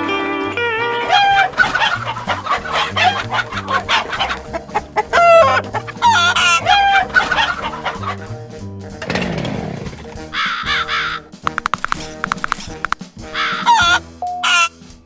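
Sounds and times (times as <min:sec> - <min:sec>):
bouncy music bass line: 0:00.0 - 0:09.0, 0:11.5 - 0:14.0
cartoon chickens clucking: 0:00.8 - 0:08.3, 0:10.4 - 0:14.7
chicken squawks: 0:00.8 - 0:08.3, 0:10.3 - 0:11.3, 0:13.3 - 0:14.7.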